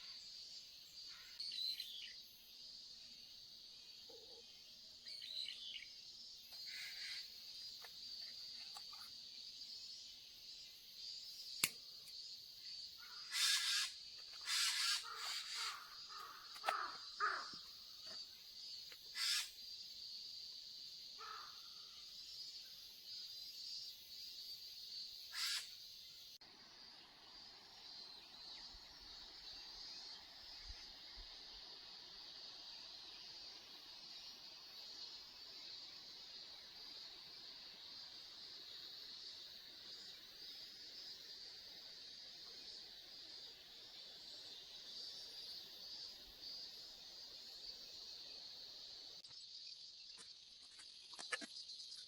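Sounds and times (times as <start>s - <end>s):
sharp click: 11.6s - 11.8s
crow cawing: 14.5s - 17.7s, 21.2s - 21.9s.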